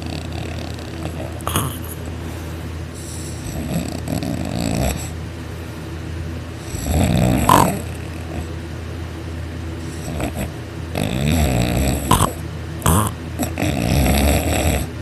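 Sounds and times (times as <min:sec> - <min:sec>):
man snoring heavily: 0:00.0 - 0:02.0, 0:03.0 - 0:05.2, 0:06.6 - 0:08.5, 0:09.8 - 0:15.0.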